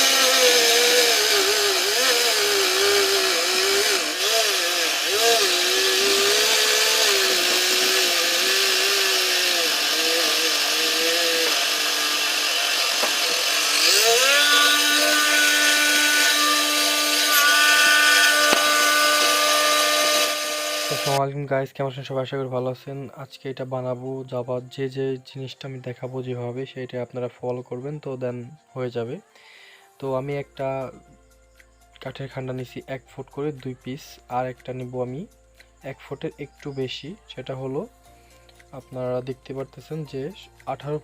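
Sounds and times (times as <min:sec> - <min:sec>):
motor saw whining: 0:00.0 - 0:21.2.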